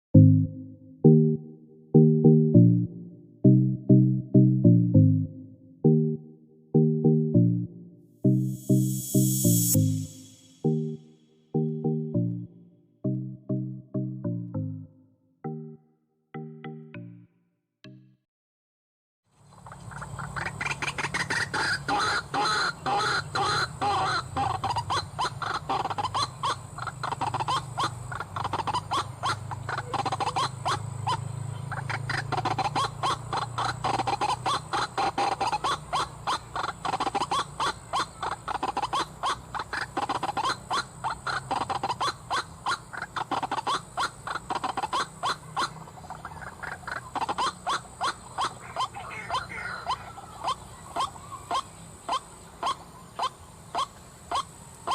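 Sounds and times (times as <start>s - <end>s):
harsh croaking bird calls: 19.5s - 54.9s.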